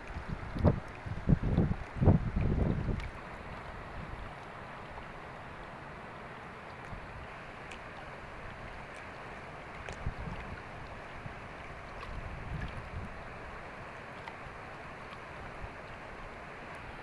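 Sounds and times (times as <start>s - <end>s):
flowing river water: 0.0s - 17.0s
wind buffeting microphone: 0.2s - 3.1s, 10.0s - 10.6s, 12.1s - 13.2s.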